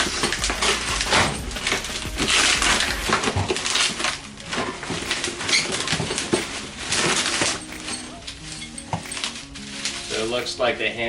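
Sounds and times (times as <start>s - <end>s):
packaging rustling and crunching: 0.0s - 10.6s.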